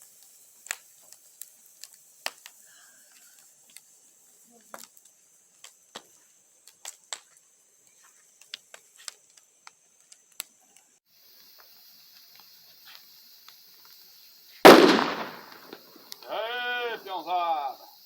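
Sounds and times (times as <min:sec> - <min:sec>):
bonfire crackling and popping: 0:00.0 - 0:10.6, 0:14.7 - 0:17.2
faint high hiss: 0:00.0 - 0:18.0.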